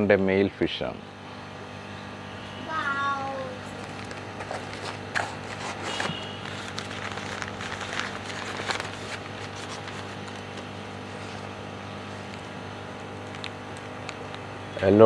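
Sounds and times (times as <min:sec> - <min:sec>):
steady low hum: 0:00.0 - 0:15.0
plastic bags crinkling: 0:03.6 - 0:15.0.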